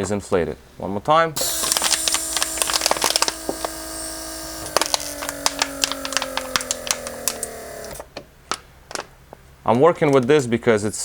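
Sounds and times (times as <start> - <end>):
electric pump motor whine: 1.4 - 8.1
plastic bottle crackling: 1.4 - 9.1.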